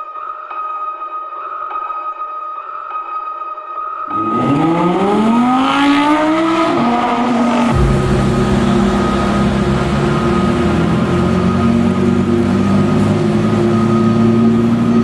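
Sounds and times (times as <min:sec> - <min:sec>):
car engine revving: 0:04.1 - 0:15.0.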